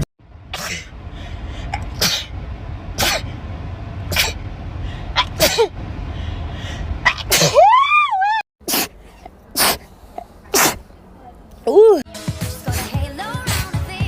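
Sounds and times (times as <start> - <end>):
person sneezing: 0.6 - 0.9, 2.0 - 2.3, 4.1 - 4.4, 7.1 - 7.6, 8.6 - 9.0, 9.6 - 9.9, 10.5 - 10.8.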